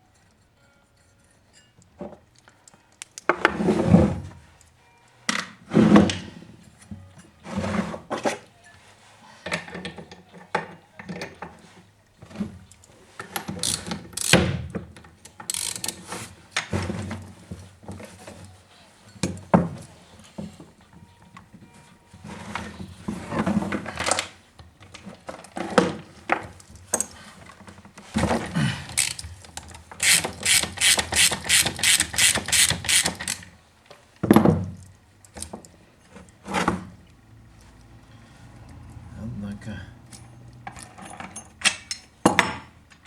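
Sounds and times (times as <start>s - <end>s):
hand tools clicking and rattling: 0.2s - 3.5s, 12.2s - 16.7s, 24.9s - 33.6s.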